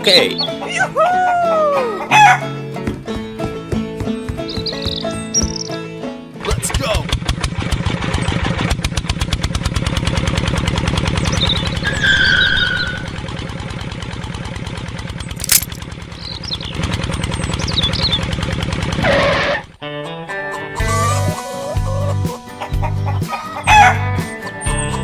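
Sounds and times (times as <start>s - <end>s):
birds chirping: 0.0s - 0.9s, 3.1s - 6.0s, 11.2s - 13.2s, 15.5s - 18.4s
small engine chugging: 6.8s - 19.8s
sharp click: 15.4s - 15.8s.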